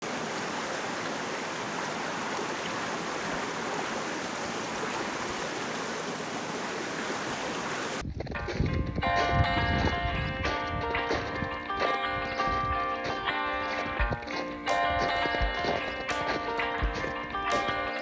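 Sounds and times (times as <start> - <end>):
stream water rushing: 0.0 - 8.6.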